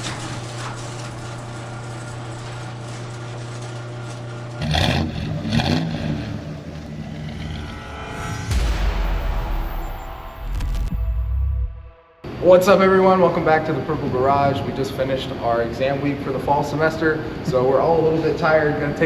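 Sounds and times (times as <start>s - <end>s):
car engine revving: 4.5s - 12.2s.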